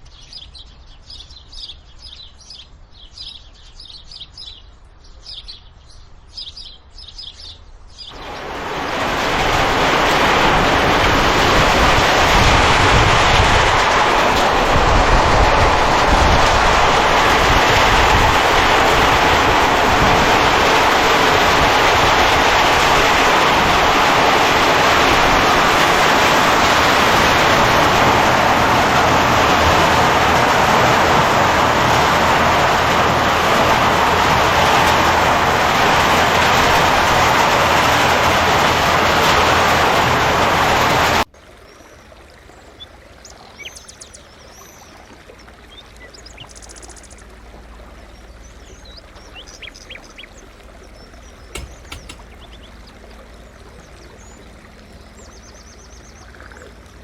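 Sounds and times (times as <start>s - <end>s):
birds chirping: 42.7s - 57.0s.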